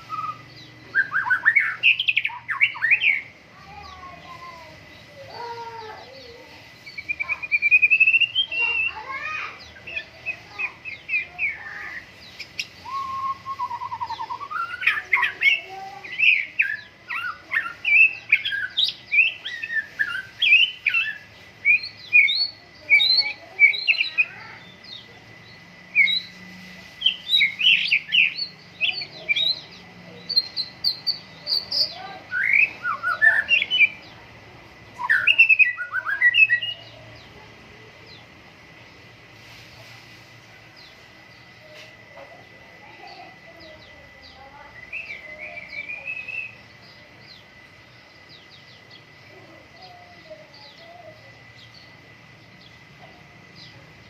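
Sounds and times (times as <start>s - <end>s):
bird singing whistled phrases: 0.0s - 3.3s, 6.8s - 25.0s, 26.0s - 26.4s, 27.0s - 34.1s, 35.0s - 37.0s, 44.7s - 46.6s.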